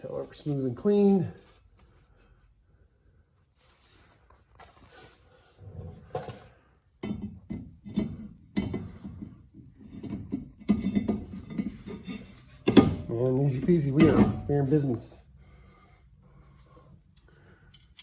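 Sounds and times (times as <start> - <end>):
metal clunks and scraping: 5.6 - 15.1.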